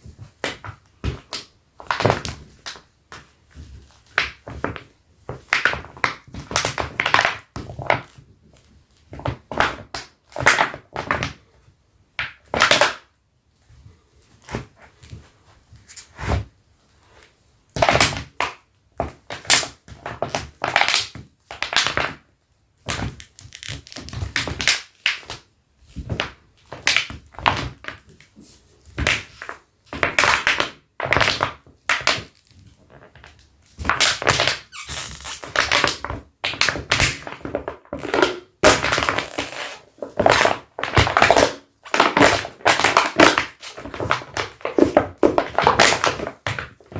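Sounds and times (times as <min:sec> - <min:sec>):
leather boots squeaking: 0:34.7 - 0:35.6.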